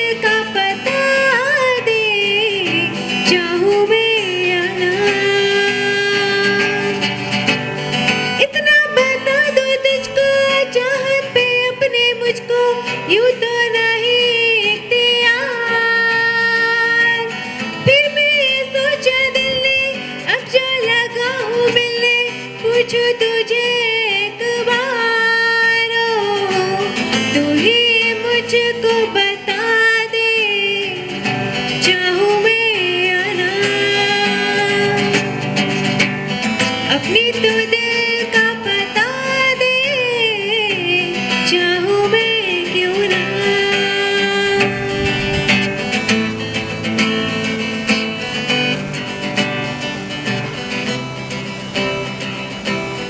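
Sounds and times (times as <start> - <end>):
woman singing: 0.0 - 46.1
guitar accompaniment: 0.0 - 53.0.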